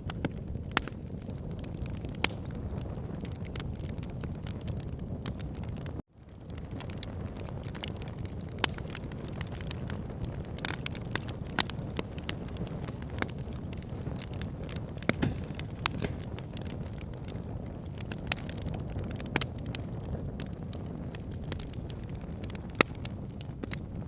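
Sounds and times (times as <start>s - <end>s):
fire crackling and popping: 0.0s - 24.0s
fire burning rush: 0.1s - 24.0s.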